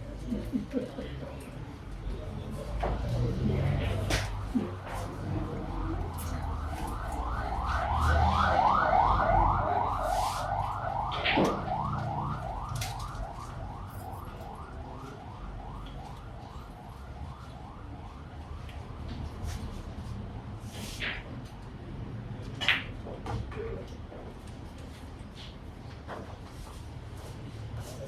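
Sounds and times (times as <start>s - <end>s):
electronic siren yelping: 5.5s - 13.9s.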